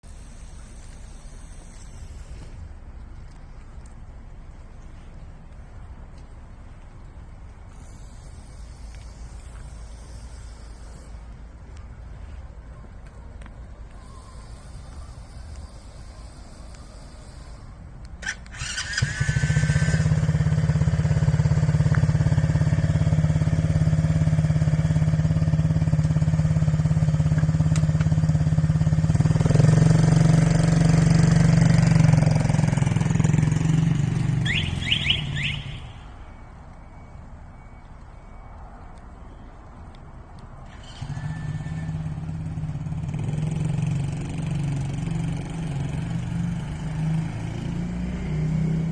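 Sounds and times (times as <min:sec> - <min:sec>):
quad bike engine idling: 0:18.2 - 0:35.9
short beeps: 0:34.4 - 0:38.9.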